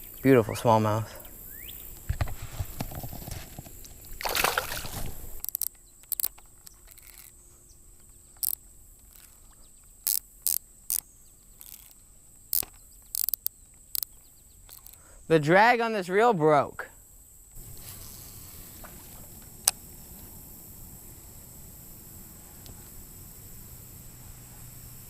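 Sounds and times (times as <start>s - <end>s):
faint insect-like hum: 0.0s - 25.0s
water splashing around a kayak: 2.9s - 5.6s
sharp clicks and knocks: 11.6s - 15.0s.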